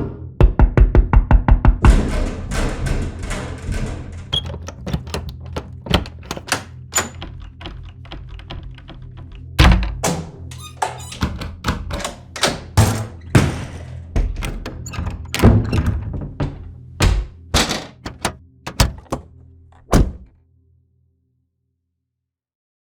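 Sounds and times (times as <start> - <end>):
door thunks and slams: 1.8 - 20.3
door latch and handle clicks: 4.4 - 13.2, 14.4 - 16.2, 17.0 - 20.3.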